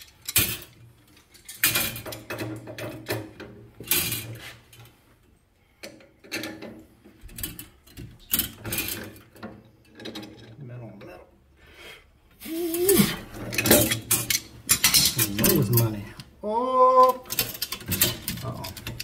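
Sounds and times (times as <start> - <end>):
tools clicking on metal pipe fittings: 0.0 - 4.9, 5.8 - 10.6, 12.8 - 16.3, 17.0 - 19.0.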